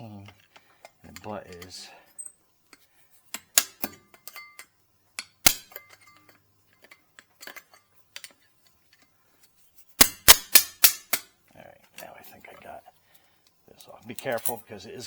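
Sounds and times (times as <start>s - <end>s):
metal tools tapping on foil cap: 3.3s - 9.1s, 10.0s - 11.3s.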